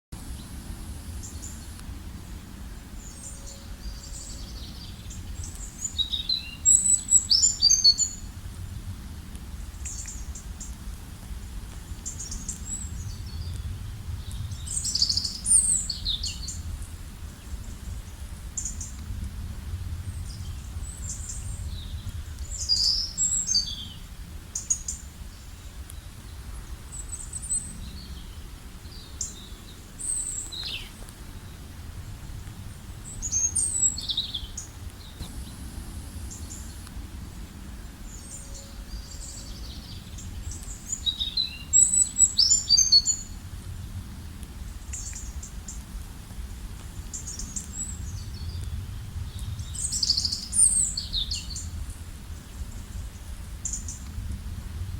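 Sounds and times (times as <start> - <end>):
wild birds singing and chirping: 0.2 - 8.8, 9.5 - 43.6, 44.2 - 54.3
steady low rumble: 0.2 - 54.9.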